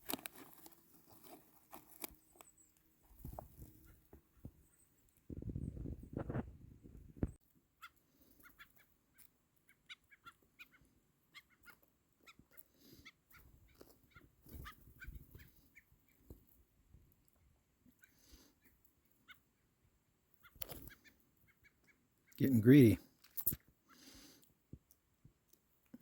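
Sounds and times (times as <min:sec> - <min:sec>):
birds calling: 0:07.8 - 0:16.4.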